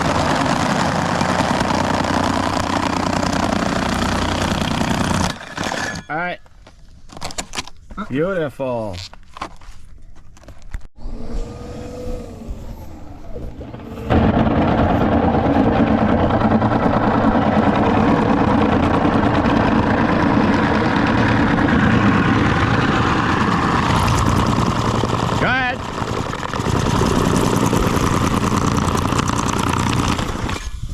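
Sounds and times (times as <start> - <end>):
power drill boring through wall: 0.0 - 6.0, 13.0 - 30.8.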